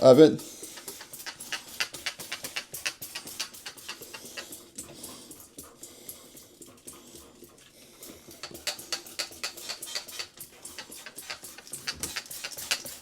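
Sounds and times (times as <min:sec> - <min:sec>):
spray bottle hissing sprays: 0:00.4 - 0:05.1, 0:08.2 - 0:13.0.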